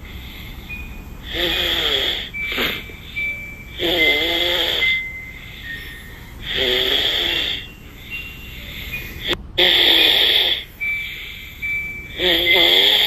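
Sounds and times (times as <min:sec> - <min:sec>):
loud rough snores: 0:01.2 - 0:05.8, 0:06.4 - 0:07.7, 0:08.7 - 0:11.4, 0:12.1 - 0:13.0.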